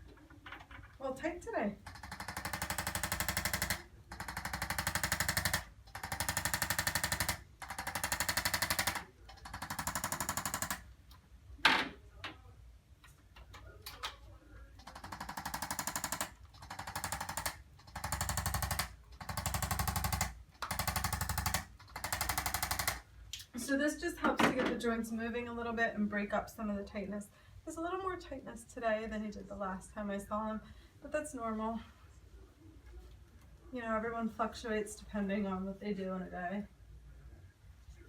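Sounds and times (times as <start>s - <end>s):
electric massager hammering: 1.9s - 10.8s, 14.9s - 23.0s.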